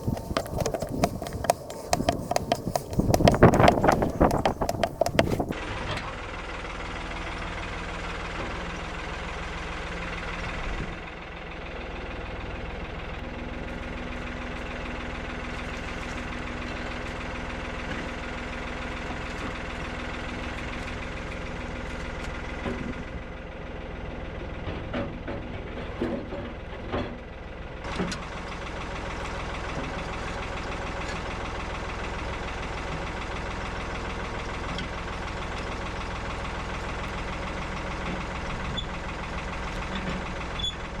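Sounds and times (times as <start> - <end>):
tractor engine idling: 0.0 - 5.6.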